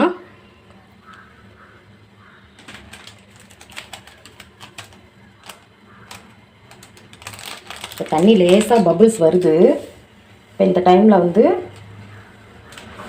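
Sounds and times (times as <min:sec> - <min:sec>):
water pan ticking and crackling: 0:02.3 - 0:09.6, 0:11.7 - 0:13.0.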